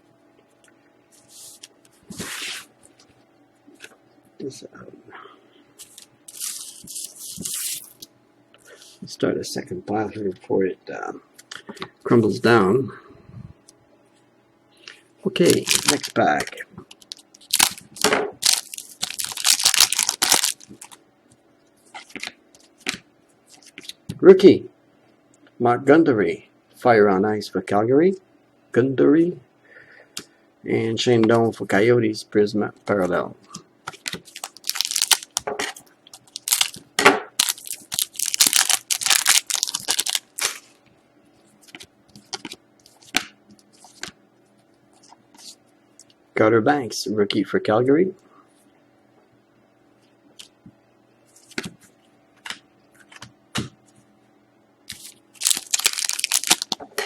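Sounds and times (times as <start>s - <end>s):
wrapper rustling: 5.8s - 8.0s, 15.4s - 21.0s, 34.0s - 36.8s, 37.4s - 40.8s, 54.9s - 56.8s
wrapper tearing open: 6.3s - 8.0s, 15.4s - 21.0s, 34.3s - 35.5s, 36.1s - 36.8s, 37.4s - 40.7s, 54.9s - 56.8s.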